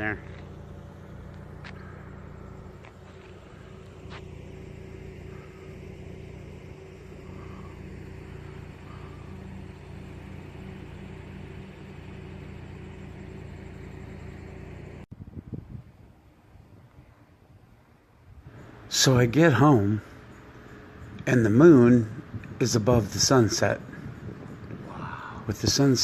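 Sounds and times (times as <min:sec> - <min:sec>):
car engine running: 0:00.0 - 0:15.1
road rumble: 0:00.0 - 0:26.0.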